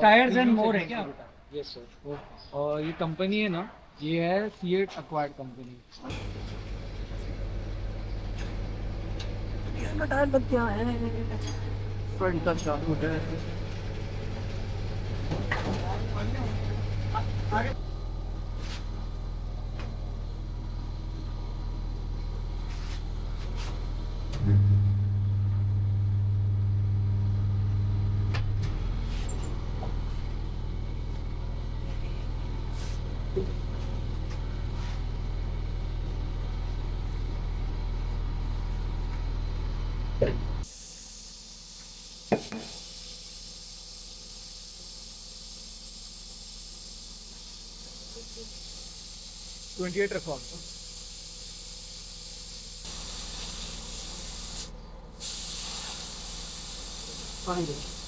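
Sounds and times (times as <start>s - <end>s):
equipment humming: 6.0s - 58.0s
motor running: 6.1s - 58.0s
compressed air hissing: 22.4s - 24.5s, 40.6s - 58.0s.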